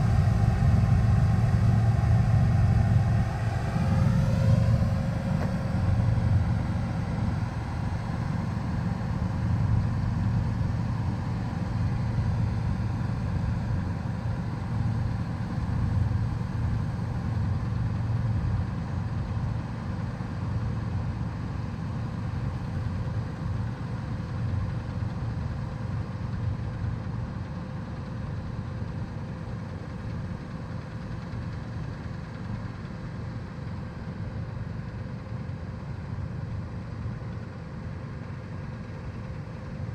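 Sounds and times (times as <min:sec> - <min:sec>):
diesel engine rumbling: 0:00.0 - 0:13.7.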